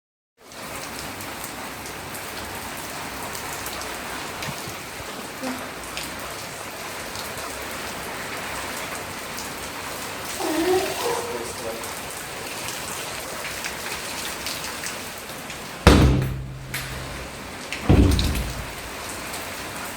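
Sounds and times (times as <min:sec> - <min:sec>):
steady rain hissing: 0:00.5 - 0:15.8.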